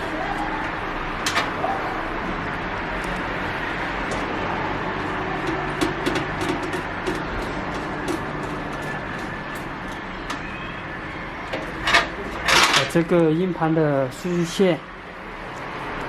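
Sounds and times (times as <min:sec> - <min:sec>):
computer parts clicking and tapping: 0:05.4 - 0:10.7.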